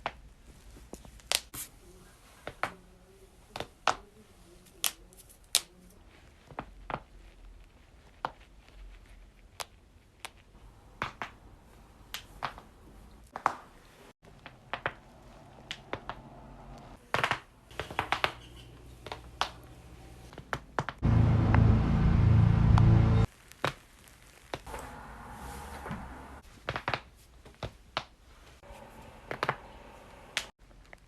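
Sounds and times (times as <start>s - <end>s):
loud steady buzz: 21.0s - 23.3s.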